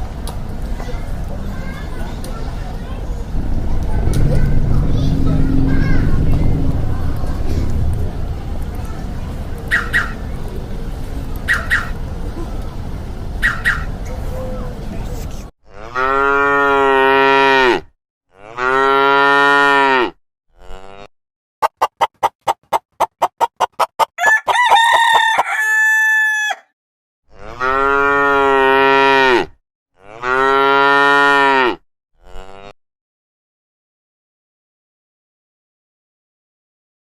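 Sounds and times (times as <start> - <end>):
fowl clicking calls: 9.7 - 10.2, 11.4 - 12.0, 13.4 - 13.9
cattle mooing: 15.7 - 21.0, 27.3 - 32.7
high held fowl call: 24.1 - 26.7.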